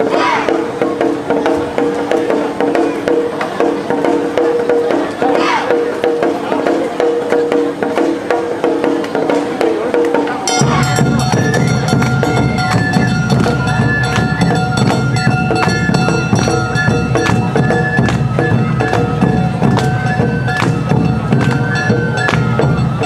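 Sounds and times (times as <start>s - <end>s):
drums beating: 0.0s - 23.0s
bamboo flute melody: 10.0s - 23.0s
gong: 10.4s - 23.0s.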